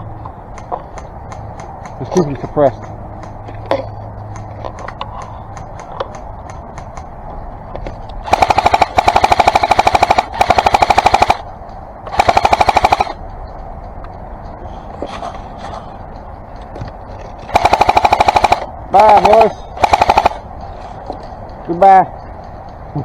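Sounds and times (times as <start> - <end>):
airsoft gun firing bursts: 8.2 - 11.4, 12.1 - 13.2, 17.5 - 20.4.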